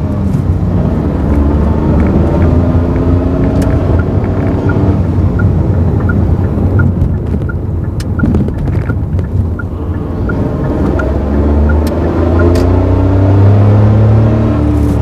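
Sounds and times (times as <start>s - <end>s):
car engine low rumble: 0.0s - 15.0s
light ticking: 3.4s - 12.8s.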